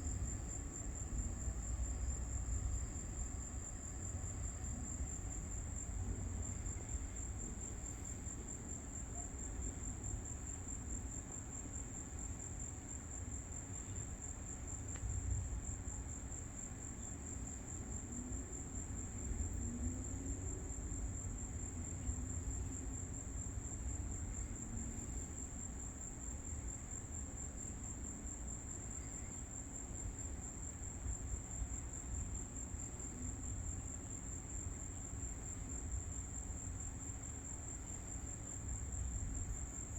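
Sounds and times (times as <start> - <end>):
constant low rumble: 0.0 - 10.9
crickets trilling: 0.0 - 39.9.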